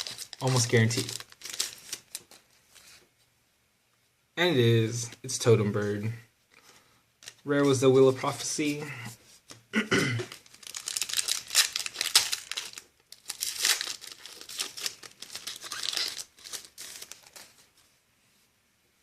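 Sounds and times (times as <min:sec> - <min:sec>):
foil wrapper crinkling and tearing: 0:00.0 - 0:02.5, 0:10.3 - 0:17.7.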